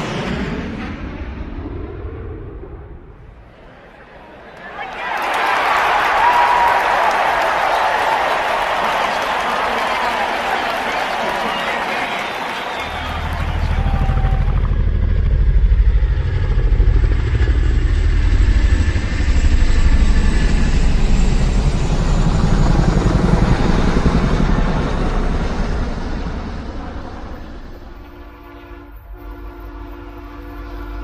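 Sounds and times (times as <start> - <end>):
vehicle engine running: 12.8 - 28.0.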